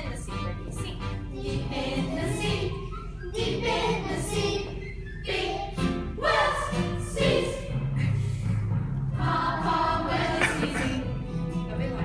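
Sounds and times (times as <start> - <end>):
musical accompaniment: 0.0 - 12.0
group singing: 1.5 - 2.7, 5.2 - 7.7, 9.2 - 11.1.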